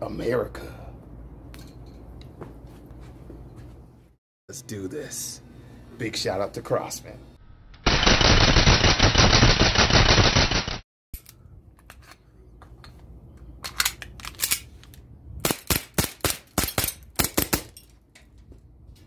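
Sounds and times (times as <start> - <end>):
air rifle rapid burst: 7.8 - 10.8.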